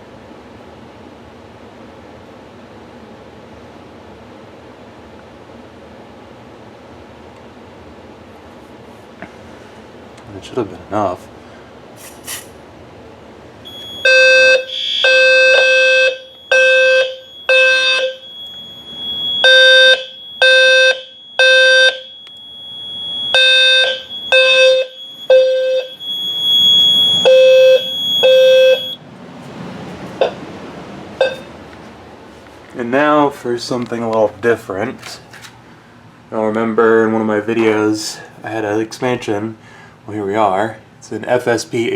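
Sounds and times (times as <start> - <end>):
fire alarm horn blasts: 13.6 - 31.6
steady high-pitched tone: 13.7 - 31.8.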